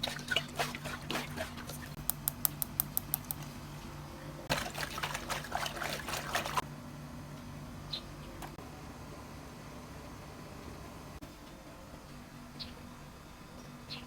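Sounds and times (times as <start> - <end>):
water splashing and trickling: 0.0 - 2.0, 3.3 - 6.7
sharp high clicks: 2.0 - 3.4.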